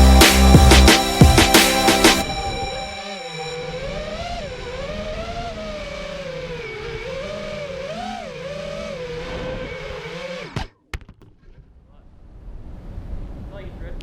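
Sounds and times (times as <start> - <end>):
drone motors whining: 0.0 - 10.7.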